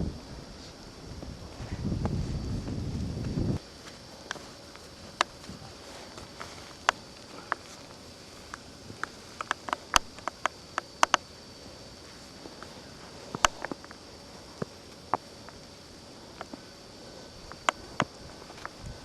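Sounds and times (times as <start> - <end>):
faint steady hiss: 0.0 - 19.0
thin high whine: 0.0 - 19.0
sharp ticks and clicks: 8.5 - 11.3, 17.4 - 18.8.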